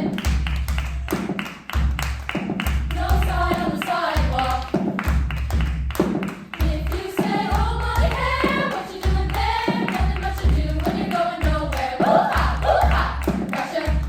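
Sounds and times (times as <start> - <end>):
hand claps: 0.0 - 14.0
low thumping beat: 0.0 - 14.0
choir singing: 3.0 - 4.6, 6.6 - 14.0.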